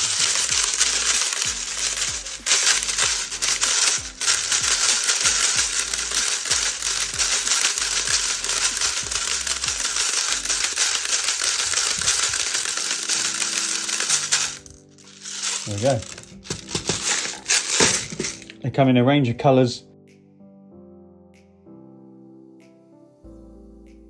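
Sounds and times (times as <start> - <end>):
plastic pellets clattering into magazine: 0.0 - 18.6.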